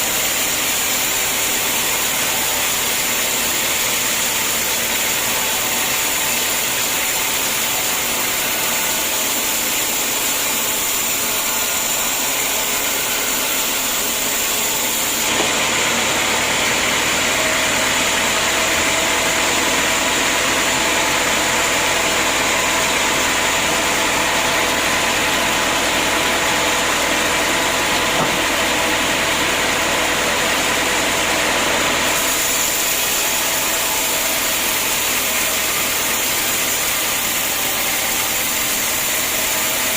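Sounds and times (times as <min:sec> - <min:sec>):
sawmill machinery running: 0:00.0 - 0:39.9.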